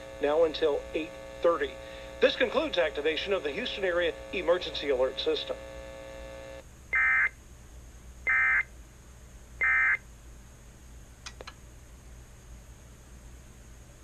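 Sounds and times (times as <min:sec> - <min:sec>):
digital data tone bursts: 0:09.6 - 0:10.0
faint clicks: 0:11.2 - 0:11.6.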